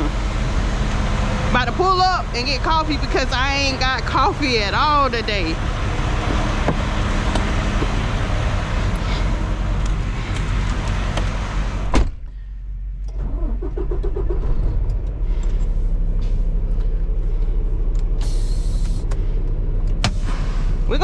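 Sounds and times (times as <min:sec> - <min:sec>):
diesel engine rumble: 0:00.0 - 0:21.0
road hiss: 0:18.2 - 0:19.0.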